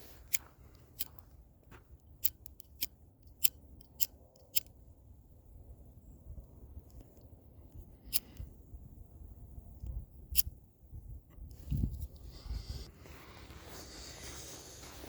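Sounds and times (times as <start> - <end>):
footsteps crunching: 0.0 - 1.9.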